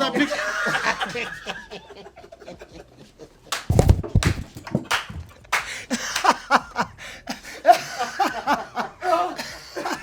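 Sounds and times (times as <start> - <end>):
men laughing: 0.0 - 3.5, 5.7 - 10.0.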